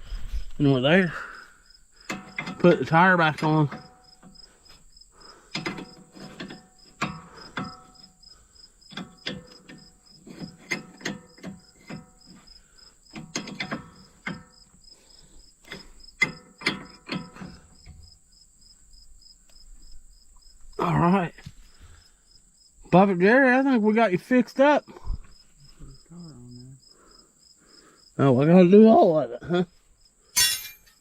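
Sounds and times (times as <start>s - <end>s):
crickets chirping: 0.0s - 31.0s
metallic clinks and clanks: 2.1s - 4.4s, 30.4s - 31.0s.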